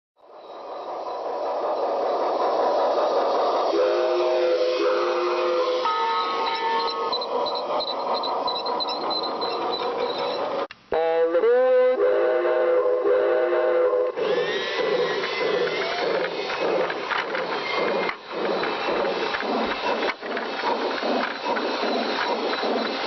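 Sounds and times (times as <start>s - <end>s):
train clatter: 0.8s - 10.7s, 14.1s - 23.0s
train whistle chord: 3.7s - 7.1s, 11.0s - 14.2s.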